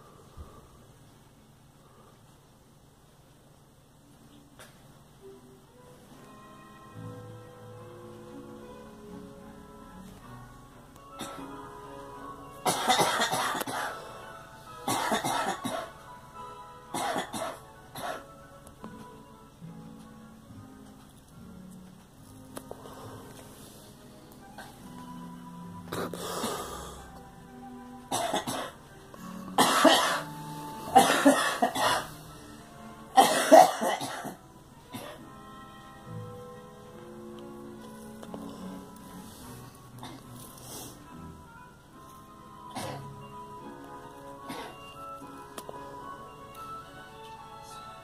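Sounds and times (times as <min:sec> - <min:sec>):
background music: 0:04.0 - 0:48.0
girl coughing: 0:12.7 - 0:14.0, 0:14.9 - 0:15.9, 0:17.0 - 0:18.2, 0:28.1 - 0:28.8, 0:29.6 - 0:30.3, 0:30.9 - 0:32.1, 0:33.2 - 0:34.4, 0:42.7 - 0:43.1, 0:44.5 - 0:44.8.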